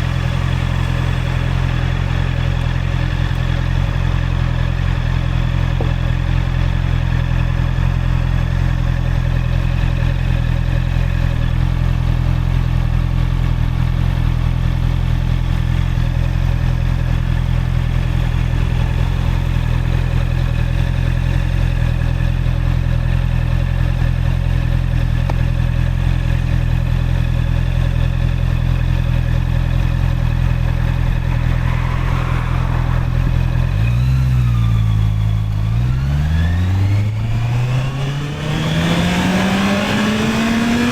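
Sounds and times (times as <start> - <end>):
motorcycle engine idling: 0.0 - 31.0.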